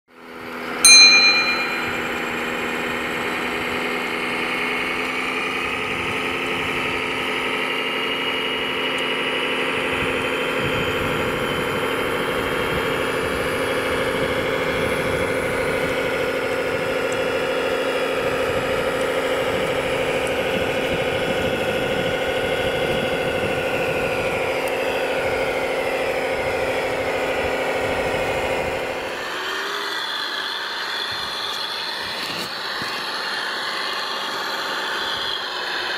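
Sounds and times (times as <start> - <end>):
sharp metallic ring: 0.8 - 2.7
model vehicle motor hum: 5.6 - 35.9.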